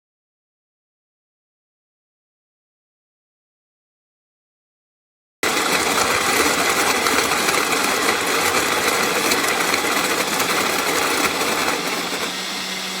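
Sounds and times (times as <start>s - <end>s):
electric coffee grinder whirring: 5.5s - 13.0s.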